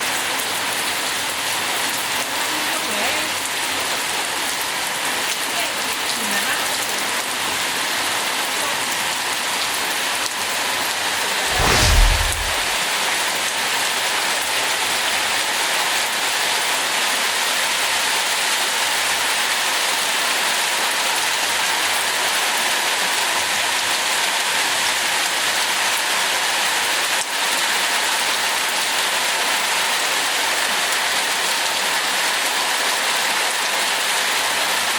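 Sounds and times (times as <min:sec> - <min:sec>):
brief low boom: 0:11.5 - 0:12.8.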